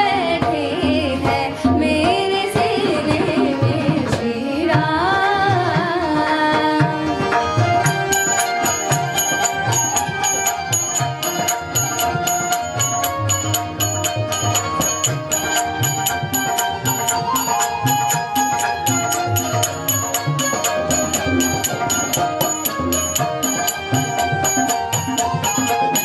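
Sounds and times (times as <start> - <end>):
sustained melodic accompaniment: 0.0 - 26.0
tabla rhythm: 0.0 - 26.0.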